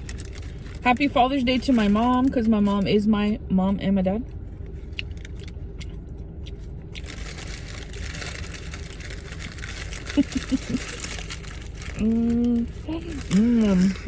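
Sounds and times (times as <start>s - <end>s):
idling car rumble: 0.0s - 14.0s
person humming: 12.0s - 14.0s.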